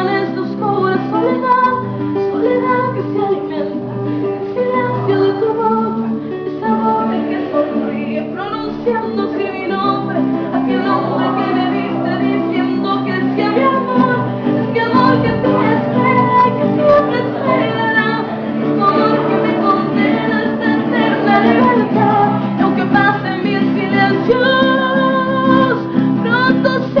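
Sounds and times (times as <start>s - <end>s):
guitar accompaniment: 0.0s - 27.0s
person singing: 0.0s - 27.0s.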